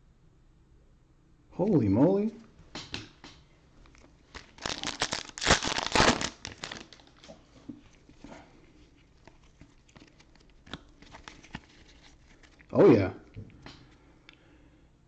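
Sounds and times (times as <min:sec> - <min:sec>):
foil wrapper crinkling and tearing: 0:03.9 - 0:07.3, 0:09.0 - 0:12.8.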